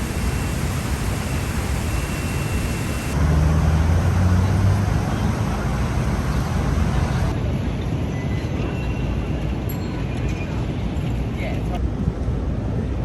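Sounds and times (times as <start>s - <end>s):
passing vehicle engine drone: 0.0s - 7.4s
city street traffic: 0.0s - 13.0s.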